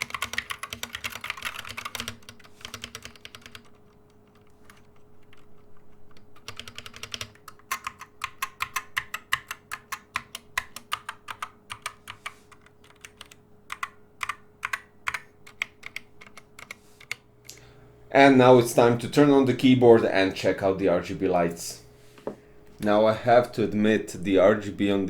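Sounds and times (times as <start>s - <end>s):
mechanical keyboard typing: 0.0s - 17.2s.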